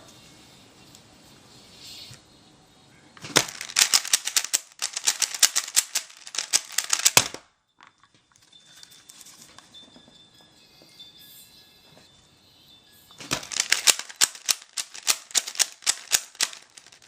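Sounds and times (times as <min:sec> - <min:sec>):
puzzle cube plastic clacks: 0:03.2 - 0:09.3, 0:13.2 - 0:17.0.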